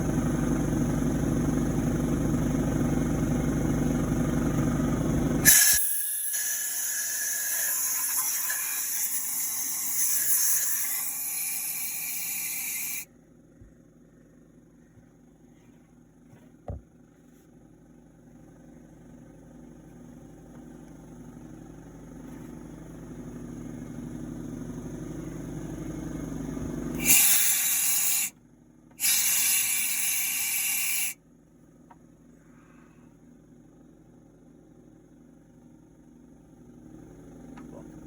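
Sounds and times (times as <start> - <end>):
low mechanical rumble: 0.0 - 38.0
loud hissing bursts: 5.4 - 13.0, 27.0 - 28.3, 29.0 - 31.2.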